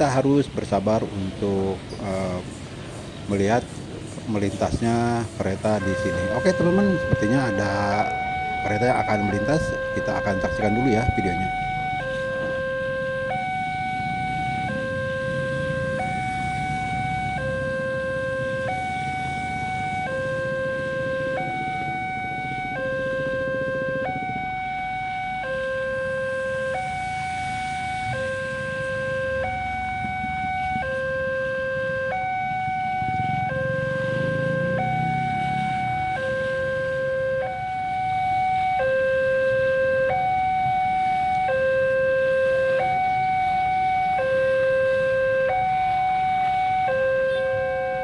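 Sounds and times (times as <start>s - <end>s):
level crossing two-tone alarm: 5.1s - 48.0s.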